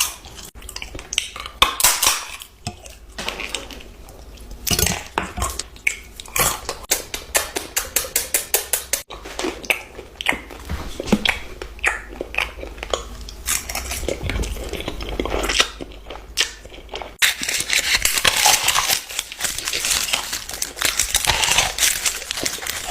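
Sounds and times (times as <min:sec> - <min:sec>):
crunching and crinkling: 0:00.0 - 0:06.9, 0:09.1 - 0:22.9
biting and chewing: 0:09.0 - 0:22.9.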